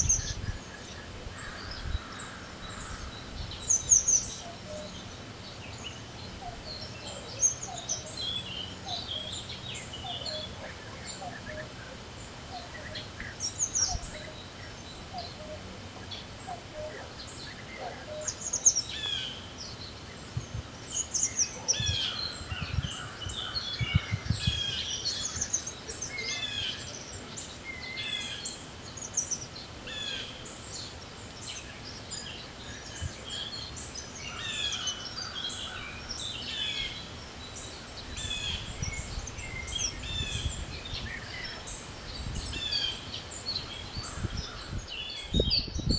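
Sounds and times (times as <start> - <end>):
wind noise: 0.0 - 4.0, 20.1 - 25.6, 38.0 - 45.9
songbirds chirping and trilling: 0.0 - 45.9.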